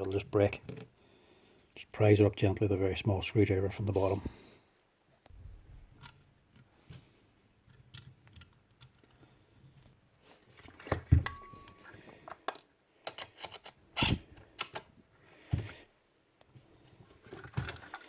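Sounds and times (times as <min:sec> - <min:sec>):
screwdriver clicks and scrapes: 0:11.2 - 0:14.9.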